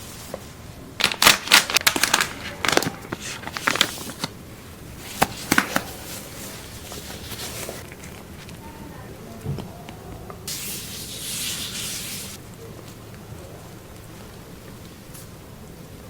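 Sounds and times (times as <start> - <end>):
handling clicks and crackles: 1.0 - 4.4, 5.0 - 8.6.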